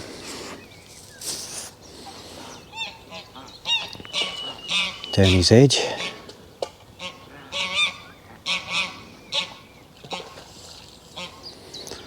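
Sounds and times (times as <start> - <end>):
goose honking: 2.4 - 6.3, 6.9 - 10.4, 11.2 - 11.4.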